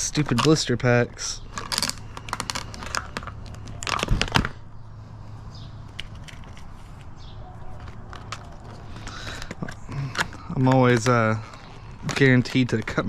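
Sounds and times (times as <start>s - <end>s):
plastic blister pack tearing: 0.0s - 4.6s, 7.8s - 13.0s.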